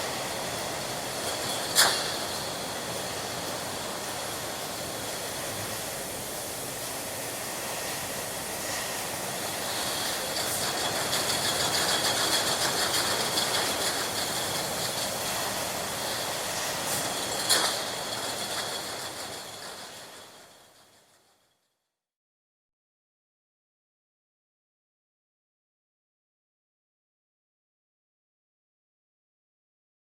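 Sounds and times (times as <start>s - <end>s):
machinery rattling fast: 0.0s - 6.8s, 9.1s - 21.6s
bottling machinery hissing and whining: 0.0s - 21.0s.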